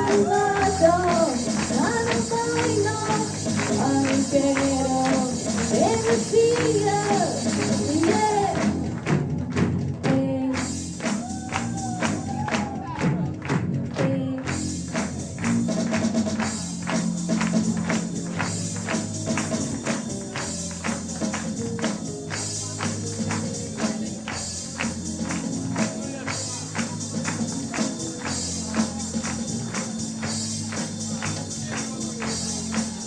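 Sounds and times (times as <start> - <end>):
person singing: 0.0 - 9.0, 10.0 - 12.2, 13.9 - 15.0
live band music: 0.0 - 33.0
percussion strikes: 0.0 - 33.0.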